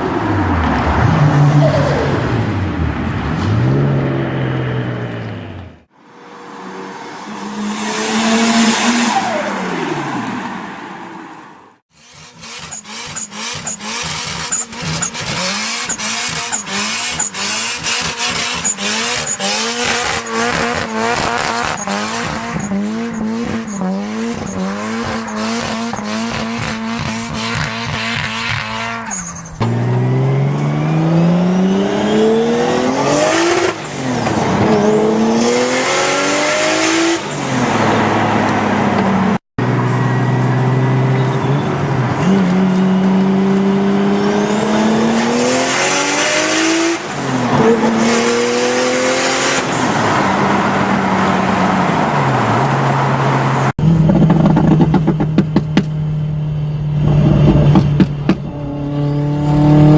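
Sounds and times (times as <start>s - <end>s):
engine revving with sharp cracks: 11.8s - 39.1s, 42.1s - 51.5s, 53.6s - 56.2s, 56.8s - 59.9s
car accelerating hard: 12.0s - 59.9s.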